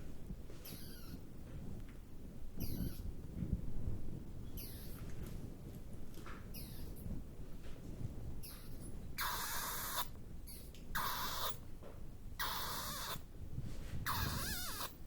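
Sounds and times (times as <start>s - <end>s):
bats chittering: 8.5s - 11.6s.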